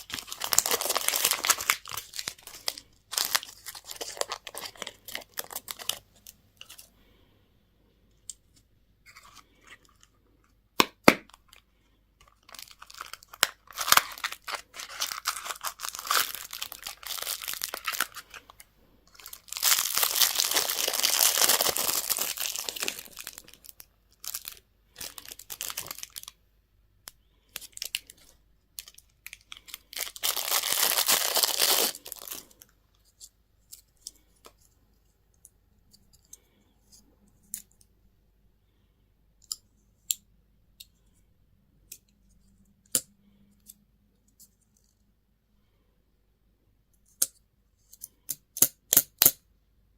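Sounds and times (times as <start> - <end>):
candy wrapper crinkling: 0.0 - 6.9, 12.2 - 26.4, 27.1 - 32.7.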